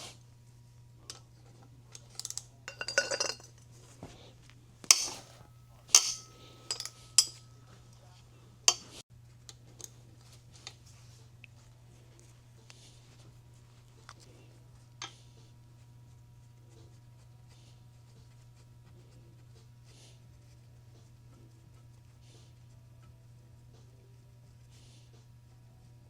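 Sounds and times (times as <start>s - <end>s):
metal parts and tools clinking: 2.0s - 3.5s, 4.9s - 7.6s.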